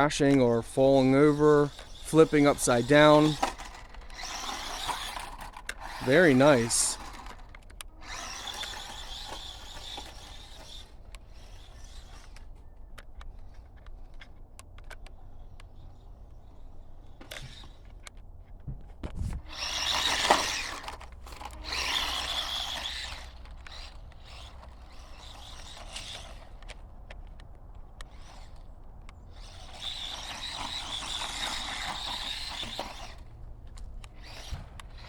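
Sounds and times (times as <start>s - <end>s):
toy truck motor whining: 0.0s - 35.0s.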